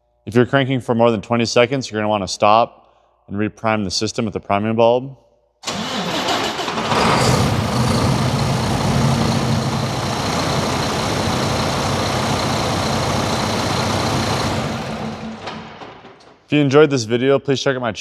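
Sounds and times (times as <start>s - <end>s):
diesel engine idling: 5.7s - 15.7s.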